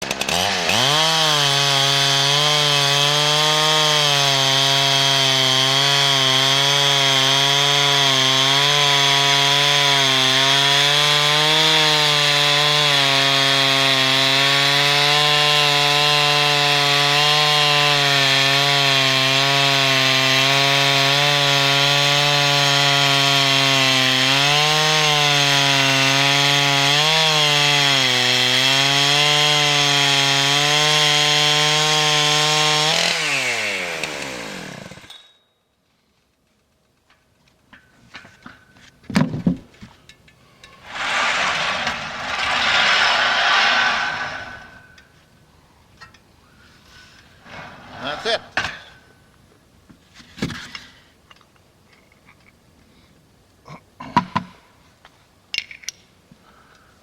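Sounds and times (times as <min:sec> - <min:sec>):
chainsaw cutting through log: 0:00.0 - 0:35.2, 0:40.6 - 0:45.1, 0:47.2 - 0:49.0.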